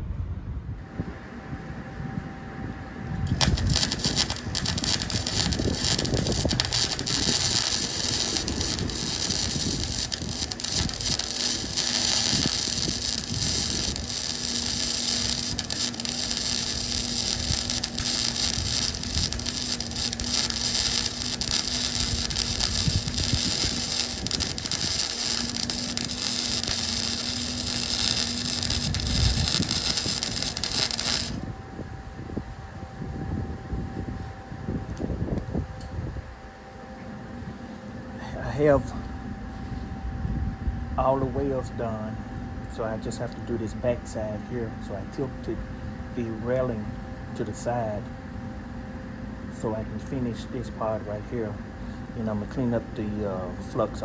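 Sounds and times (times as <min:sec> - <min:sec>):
faint hum: 0:00.0 - 0:54.0
arc welding crackle: 0:03.2 - 0:31.6.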